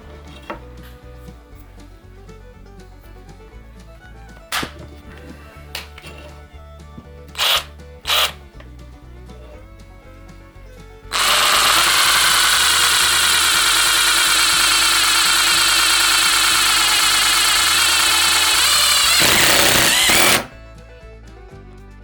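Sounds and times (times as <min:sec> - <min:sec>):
background music: 0:00.0 - 0:22.0
cordless power driver running: 0:07.3 - 0:08.7, 0:11.0 - 0:20.6.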